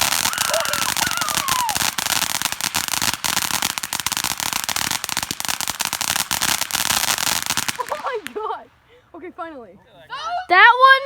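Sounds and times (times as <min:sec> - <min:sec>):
falling firework whistle: 0:00.0 - 0:02.3
firework crackling: 0:00.0 - 0:08.8.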